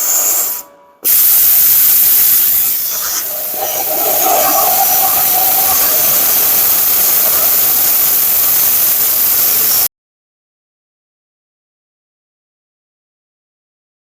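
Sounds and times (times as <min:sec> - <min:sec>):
metal grinding tool hissing: 0:00.0 - 0:09.9.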